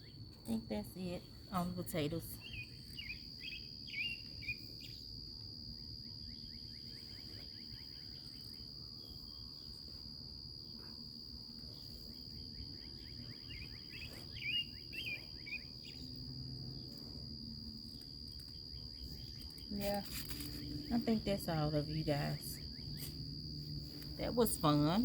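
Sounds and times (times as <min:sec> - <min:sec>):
high-pitched insect trill: 0:00.0 - 0:25.0
bird chirps: 0:02.3 - 0:05.0, 0:12.4 - 0:16.1.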